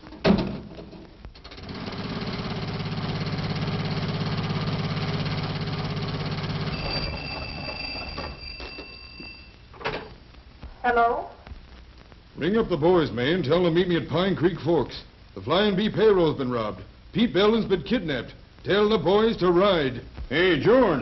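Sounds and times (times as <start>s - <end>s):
faint high steady tones: 6.3s - 21.0s.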